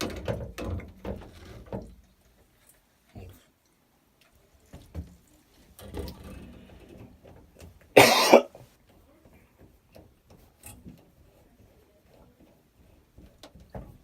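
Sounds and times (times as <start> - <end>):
faint handling and rustling: 0.0 - 14.0
person coughing loudly: 8.0 - 8.5.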